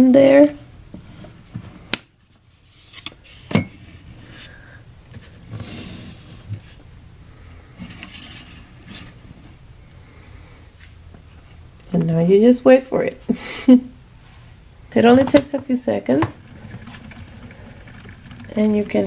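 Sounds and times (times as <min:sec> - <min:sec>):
faint rubbing and handling: 0:01.0 - 0:06.9, 0:14.2 - 0:19.0.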